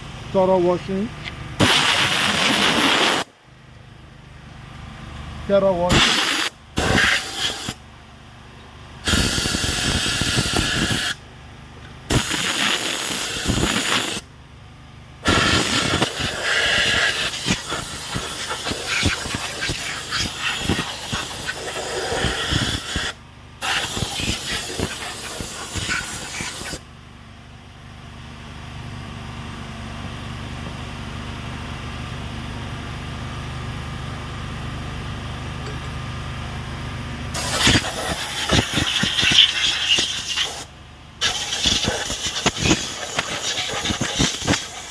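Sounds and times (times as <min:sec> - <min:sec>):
generator running: 0:00.0 - 0:44.9
pressure washer spraying water: 0:01.6 - 0:03.3, 0:05.9 - 0:07.8, 0:09.0 - 0:11.2, 0:12.1 - 0:14.2, 0:15.2 - 0:26.8, 0:37.4 - 0:44.9.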